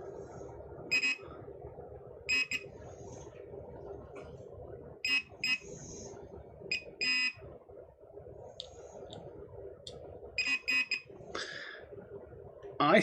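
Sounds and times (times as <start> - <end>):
metal detector beeping: 2.3 - 2.6, 10.4 - 11.0.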